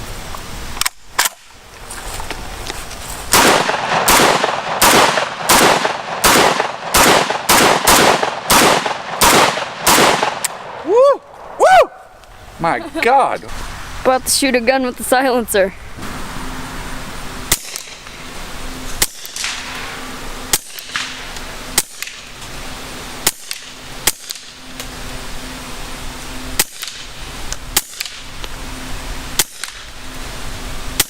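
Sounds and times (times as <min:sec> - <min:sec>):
suppressed pistol shots: 0:03.3 - 0:10.8.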